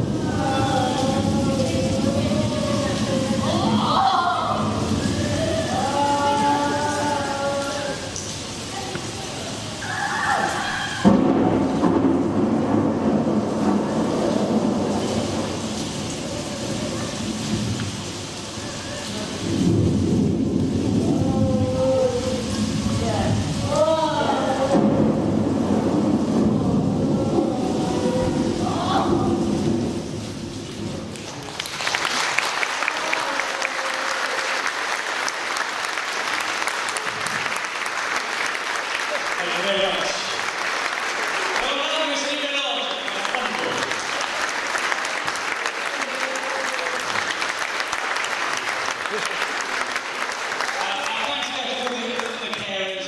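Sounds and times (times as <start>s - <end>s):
thunder crack and rumble: 0.0s - 31.8s
steady rain: 0.0s - 53.0s
audience applauding: 31.1s - 53.0s.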